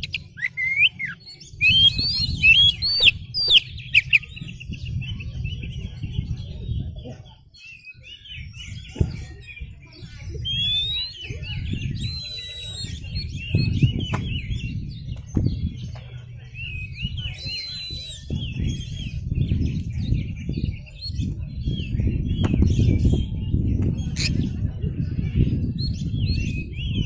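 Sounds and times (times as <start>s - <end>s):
high bird whistle: 0.0s - 4.3s
bird singing chirps and twitters: 0.0s - 27.0s.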